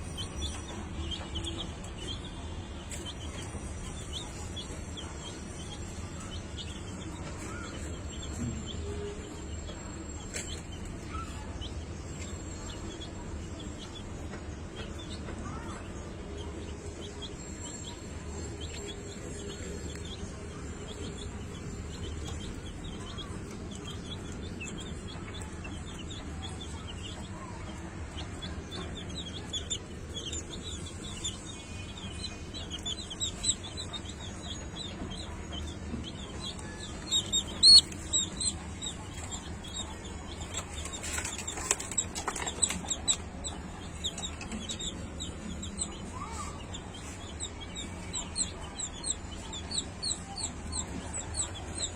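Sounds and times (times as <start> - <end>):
chickens clucking and peeping: 0.0 - 51.9.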